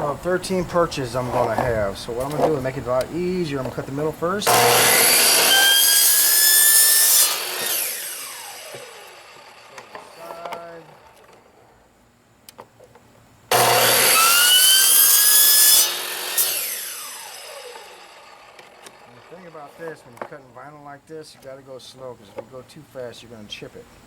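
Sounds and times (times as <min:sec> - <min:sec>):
electric saw cutting plastic gutter: 0:04.5 - 0:11.4, 0:13.5 - 0:20.2.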